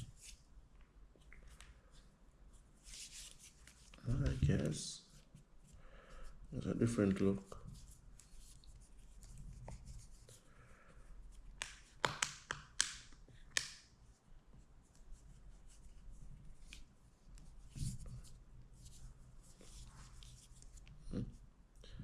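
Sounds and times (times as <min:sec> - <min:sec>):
plastic phone case clicks and taps: 0:11.6 - 0:13.8.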